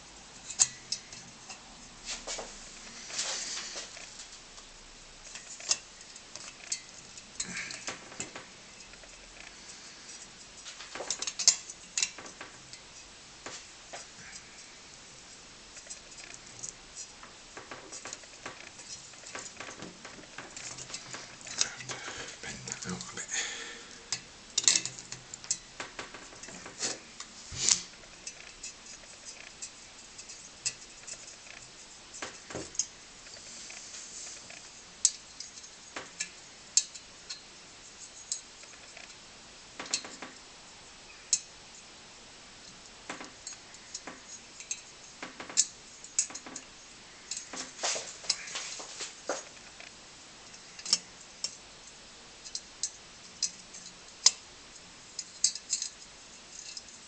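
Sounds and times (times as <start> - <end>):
small metal parts clinking: 24.1 - 26.9.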